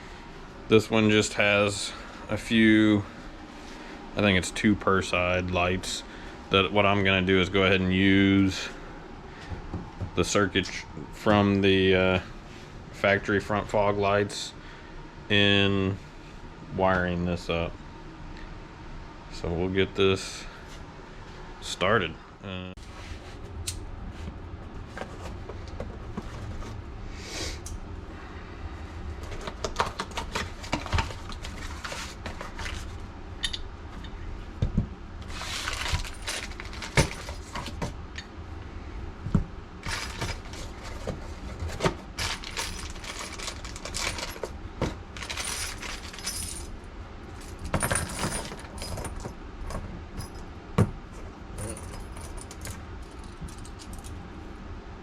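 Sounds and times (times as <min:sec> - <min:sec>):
low steady hum: 0:00.0 - 0:55.0
metallic clinks and rattles: 0:42.2 - 0:44.5, 0:45.2 - 0:46.8, 0:47.4 - 0:50.4, 0:51.6 - 0:54.1.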